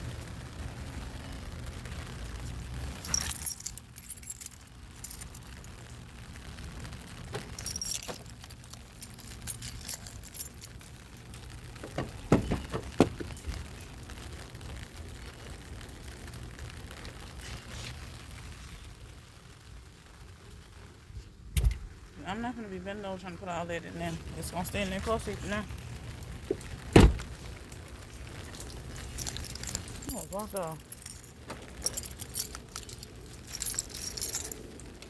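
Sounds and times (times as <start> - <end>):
keys jangling: 2.8 - 5.7, 7.3 - 11.0, 26.2 - 35.0.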